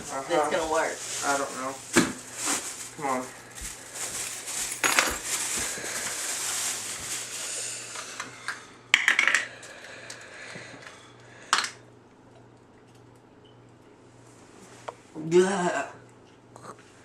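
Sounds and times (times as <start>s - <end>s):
small hard objects clinking: 2.7s - 6.7s.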